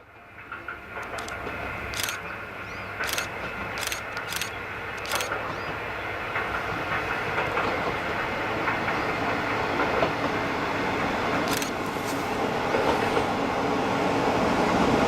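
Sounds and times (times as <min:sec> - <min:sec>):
diesel railcar running noise: 0:00.0 - 0:15.0
wheel clatter over rail joints: 0:00.8 - 0:02.2, 0:03.0 - 0:08.9
sharp clicks: 0:01.0 - 0:02.2, 0:03.0 - 0:05.4, 0:11.4 - 0:11.9.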